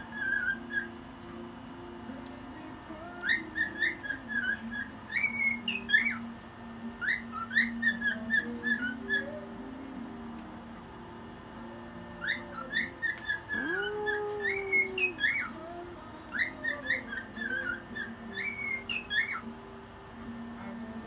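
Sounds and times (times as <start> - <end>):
cockatiel whistling chirps: 0.0 - 1.0, 3.2 - 6.3, 7.0 - 9.4, 12.2 - 15.6, 16.3 - 19.5.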